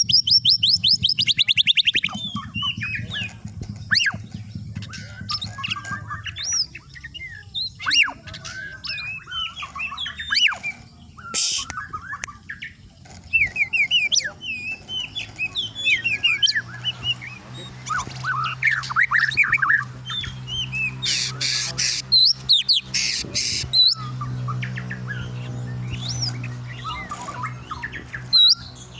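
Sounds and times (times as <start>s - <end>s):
harsh bird chattering: 0.0s - 28.9s
songbird singing: 0.0s - 28.9s.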